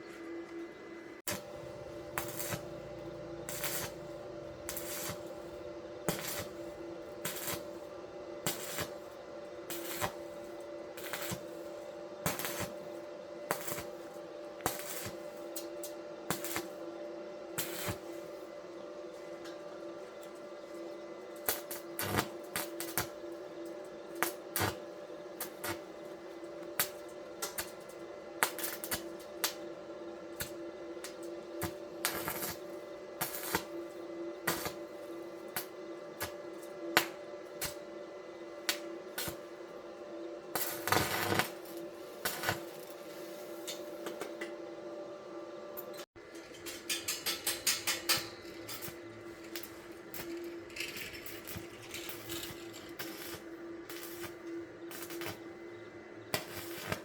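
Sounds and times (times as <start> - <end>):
background hum: 0.0 - 57.0
metal tools clinking: 45.8 - 53.0.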